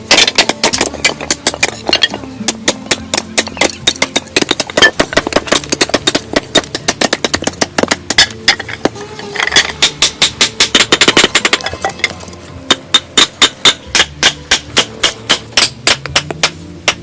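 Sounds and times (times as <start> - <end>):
rapid tapping and knocking: 0.1 - 9.0.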